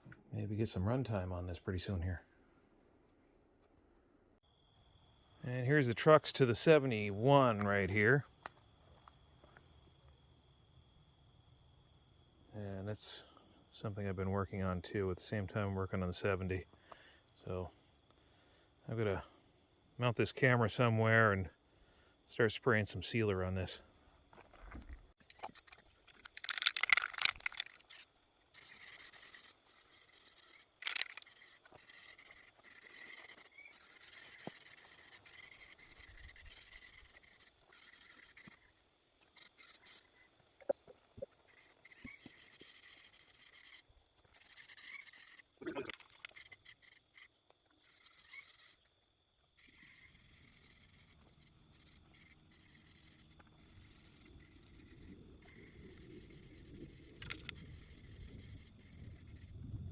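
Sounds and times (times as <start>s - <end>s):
handling rustle: 24.4s - 28.6s, 30.5s - 31.9s.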